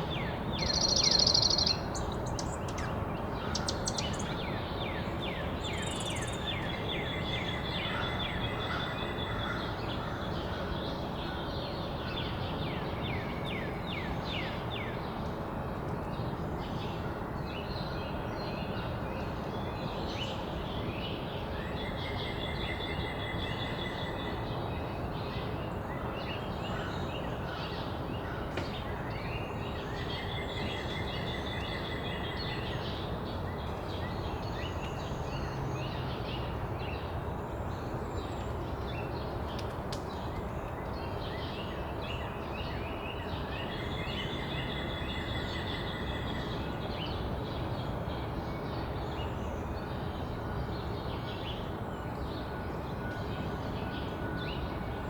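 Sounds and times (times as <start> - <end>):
songbirds singing: 0.0 - 14.8
steady background hum: 0.0 - 55.0.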